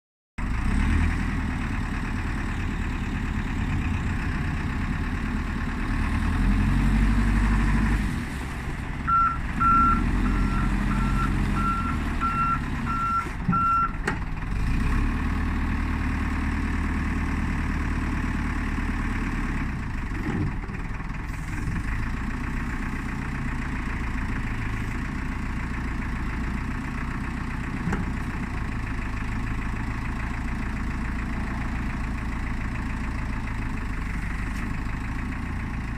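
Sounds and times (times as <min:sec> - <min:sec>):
diesel engine running and revving: 0:00.4 - 0:35.9
backup alarm beeping: 0:09.1 - 0:13.9.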